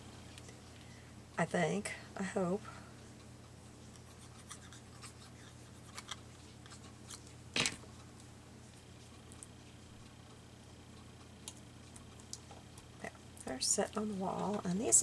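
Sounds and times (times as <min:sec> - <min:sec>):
steady low hum: 0:00.0 - 0:15.0
paper scratches and light ticks: 0:03.8 - 0:07.4.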